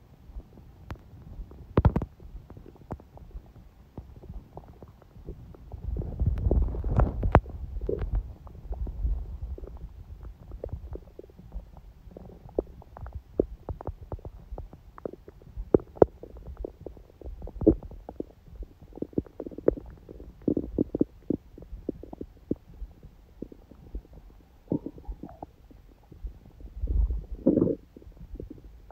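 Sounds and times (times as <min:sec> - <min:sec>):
stomach gurgling: 0:00.2 - 0:28.9.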